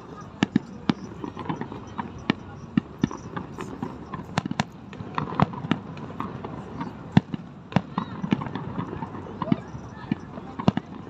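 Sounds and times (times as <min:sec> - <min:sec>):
crowd murmur: 0:00.0 - 0:11.0
fireworks banging and crackling: 0:00.0 - 0:11.0.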